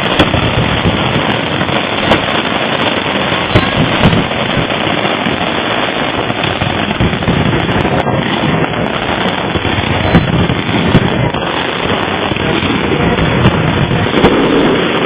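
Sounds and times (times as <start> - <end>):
fireworks bangs and crackling: 0.0 - 15.0.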